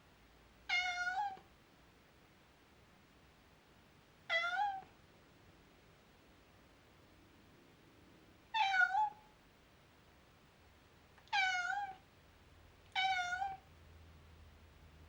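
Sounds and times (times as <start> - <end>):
cat meowing: 0.7 - 1.4, 4.3 - 4.9, 8.6 - 9.2, 11.3 - 12.0, 12.9 - 13.6.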